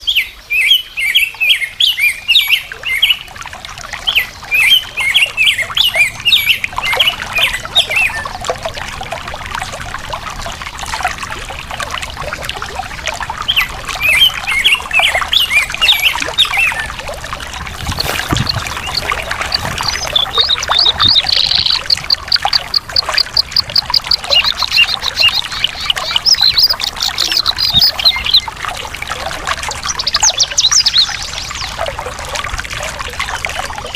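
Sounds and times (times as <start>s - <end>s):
water trickling: 0.5s - 33.9s
songbirds chirping: 13.5s - 28.6s.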